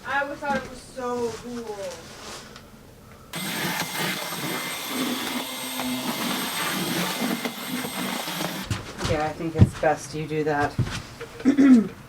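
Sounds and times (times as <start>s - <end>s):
power tool running: 3.3s - 8.7s.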